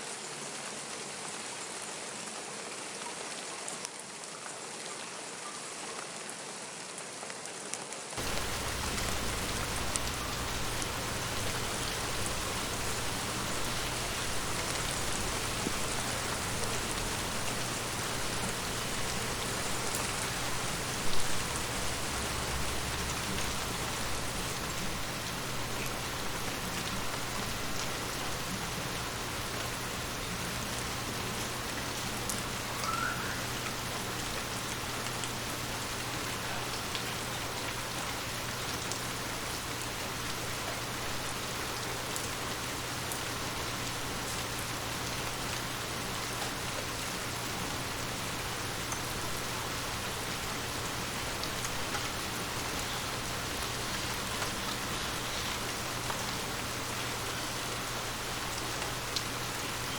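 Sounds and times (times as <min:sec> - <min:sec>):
steady rain falling: 0:00.0 - 0:59.9
low steady hum: 0:08.2 - 0:32.6.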